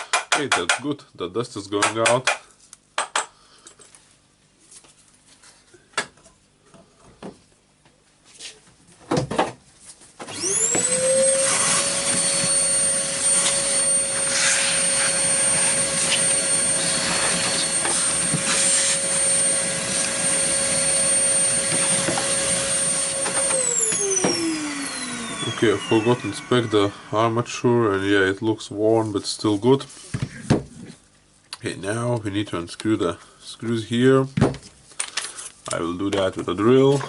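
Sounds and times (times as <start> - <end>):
vacuum cleaner motor whine: 10.3 - 28.2.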